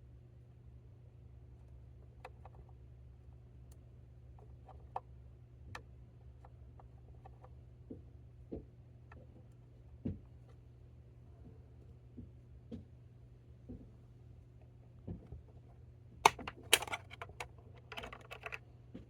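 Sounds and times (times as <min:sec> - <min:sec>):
screwdriver clicking on plastic: 0:16.3 - 0:18.6.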